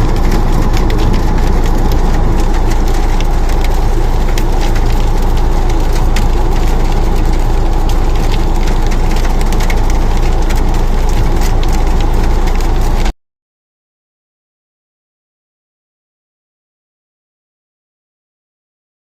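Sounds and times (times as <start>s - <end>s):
rain falling hard: 0.0s - 13.1s
wind rumble on microphone: 0.0s - 13.1s.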